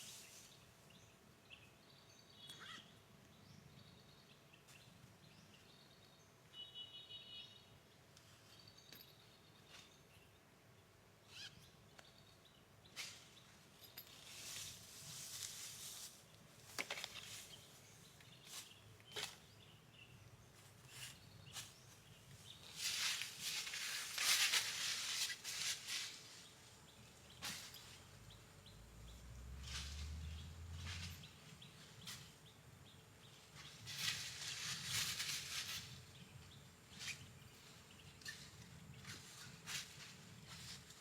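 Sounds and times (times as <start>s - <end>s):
rustling hiss: 0.0s - 0.7s, 12.9s - 19.4s, 20.7s - 41.0s
bird chirps and calls: 2.3s - 3.0s, 11.3s - 11.8s.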